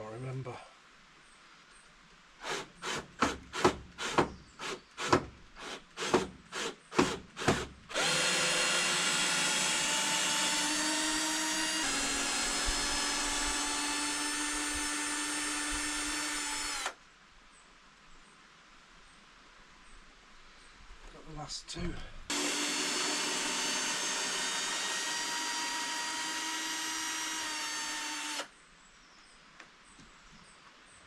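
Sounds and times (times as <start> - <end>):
power drill backing out screw: 7.0 - 17.0, 22.3 - 28.5.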